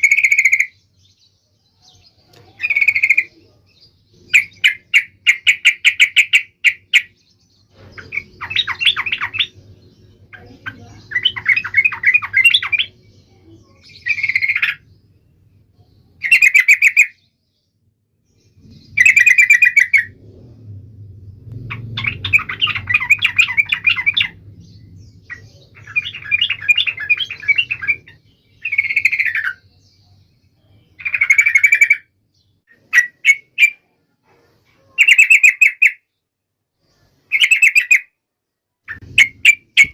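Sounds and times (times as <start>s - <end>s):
bird chattering song: 0.0s - 20.3s, 21.5s - 36.2s, 36.8s - 38.2s, 38.9s - 39.9s
faint low hum: 17.3s - 31.6s.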